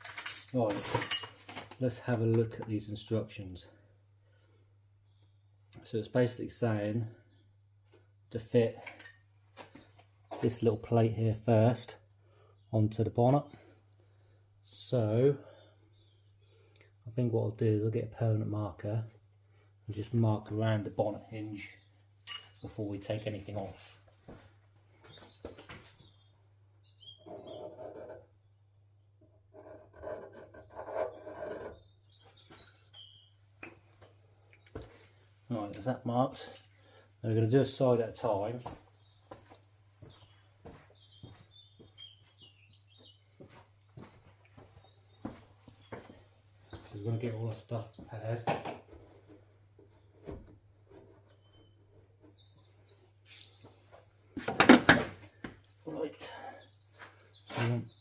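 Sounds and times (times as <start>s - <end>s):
bird chirps: 25.0s - 28.0s, 30.6s - 33.4s, 39.0s - 43.6s, 51.3s - 53.9s
marker scratching: 27.3s - 28.2s, 29.5s - 31.8s.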